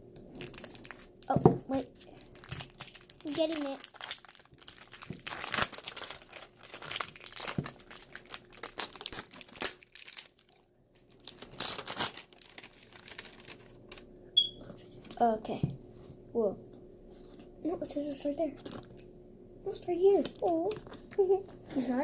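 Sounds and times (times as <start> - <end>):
packaging crinkling and tearing: 0.2 - 14.1, 18.6 - 19.0, 20.0 - 21.6.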